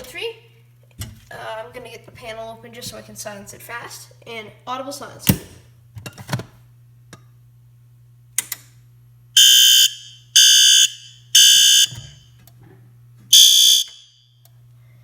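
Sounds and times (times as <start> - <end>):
fire alarm horn beeping: 9.4 - 12.3, 13.3 - 14.4.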